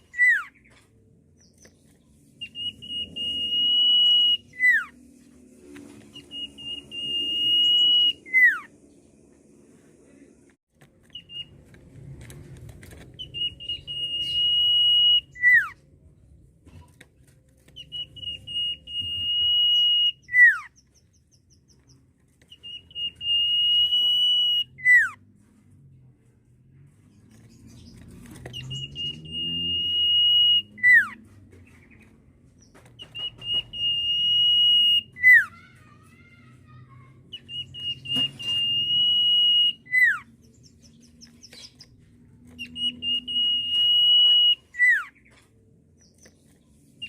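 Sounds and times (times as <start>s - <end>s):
bird whistling song: 0.0s - 0.8s, 1.4s - 5.1s, 5.7s - 8.7s, 11.1s - 11.6s, 13.1s - 15.8s, 17.6s - 25.2s, 27.6s - 35.5s, 37.3s - 45.4s.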